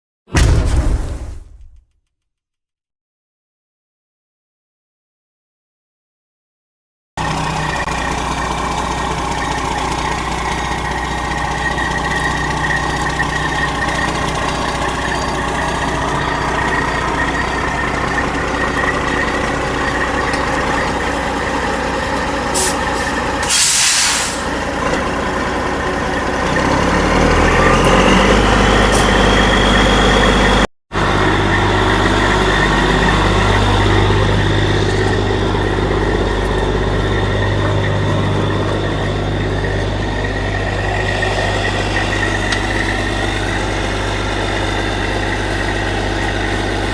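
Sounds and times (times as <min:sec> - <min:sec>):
diesel truck engine running: 0:07.2 - 0:46.9
air hiss burst: 0:22.6 - 0:24.6.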